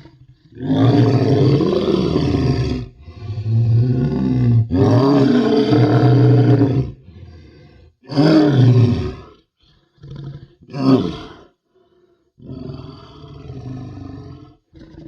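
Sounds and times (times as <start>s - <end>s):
crocodile roaring: 0.0s - 7.0s, 12.4s - 15.0s.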